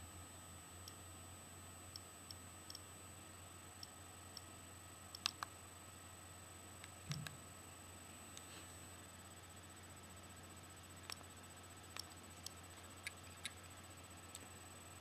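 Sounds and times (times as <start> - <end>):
sharp clicks: 5.1 - 5.5
faint ticks from handling device: 11.0 - 11.3, 11.9 - 14.5.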